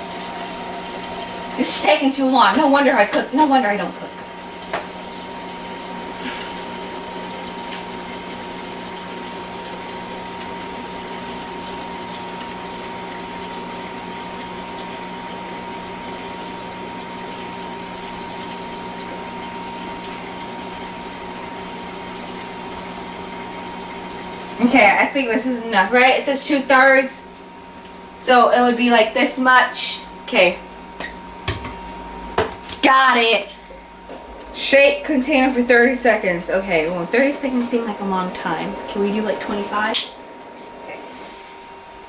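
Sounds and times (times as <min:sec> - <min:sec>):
faucet running into cup: 0:00.0 - 0:25.2
steady hum: 0:00.0 - 0:42.0.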